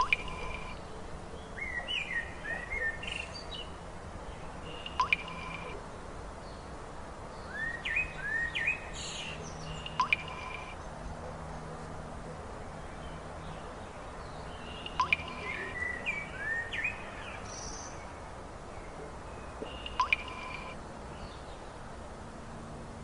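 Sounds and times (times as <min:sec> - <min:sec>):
birds chirping: 0:00.0 - 0:05.8, 0:06.4 - 0:11.9, 0:12.7 - 0:21.8
outdoor ambience hiss: 0:00.0 - 0:23.0.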